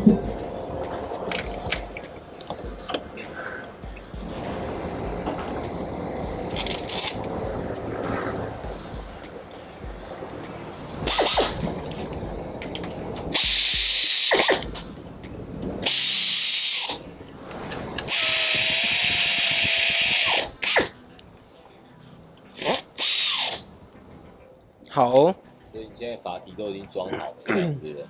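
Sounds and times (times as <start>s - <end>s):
power tool whirring: 22.6s - 23.6s.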